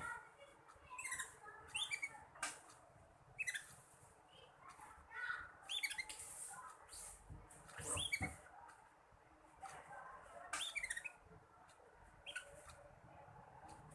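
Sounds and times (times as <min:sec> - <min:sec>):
canary twittering: 0:00.9 - 0:02.4, 0:03.3 - 0:03.8, 0:05.6 - 0:06.3, 0:07.8 - 0:08.4, 0:10.6 - 0:11.3, 0:12.2 - 0:12.8.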